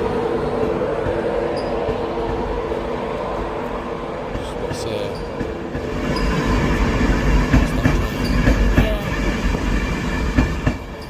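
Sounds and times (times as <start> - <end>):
train carriages rumbling past: 0.0 - 11.0
wheels clacking over rail joints: 4.4 - 11.0.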